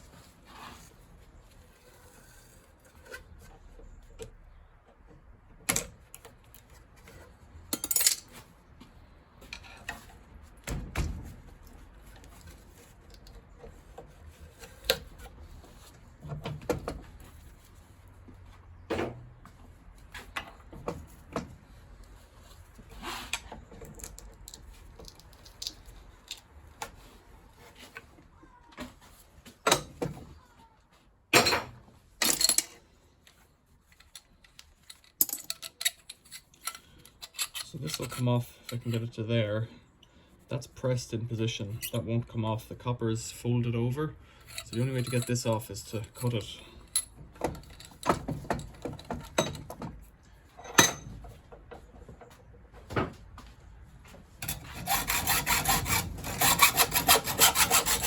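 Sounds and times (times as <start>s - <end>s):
hand tools clinking on metal: 35.0s - 39.1s, 44.4s - 48.0s.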